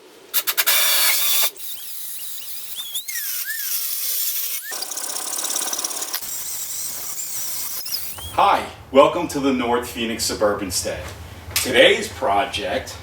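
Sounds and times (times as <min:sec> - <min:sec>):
power tool running: 0:00.4 - 0:08.4
high squeals gliding: 0:00.8 - 0:08.4.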